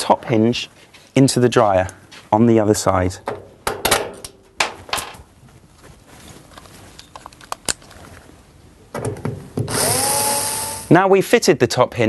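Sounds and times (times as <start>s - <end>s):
metal door hinge clicks and knocks: 3.2s - 4.4s, 8.9s - 9.7s.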